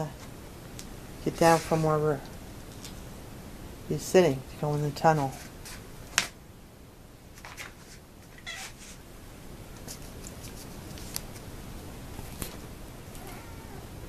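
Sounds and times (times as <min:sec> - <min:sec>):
cat meowing: 0:08.4 - 0:08.8, 0:13.1 - 0:14.0.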